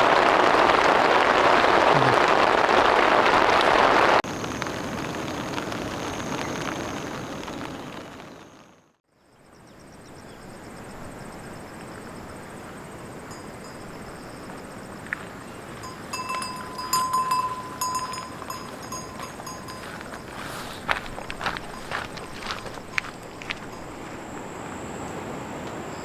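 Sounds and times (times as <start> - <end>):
small bells jingling: 13.3 - 14.2, 15.3 - 24.4
steady rushing noise: 15.9 - 24.0.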